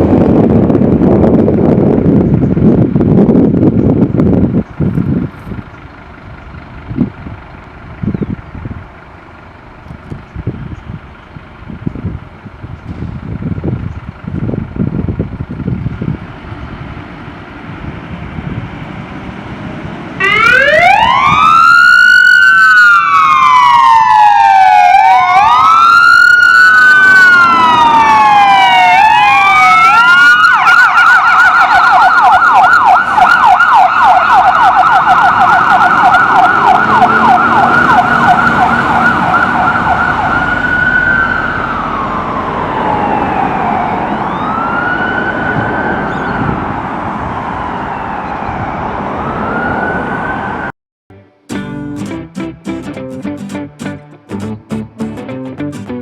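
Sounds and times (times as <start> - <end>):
engine and road noise: 0.0 - 56.0
fire engine siren: 14.5 - 50.7.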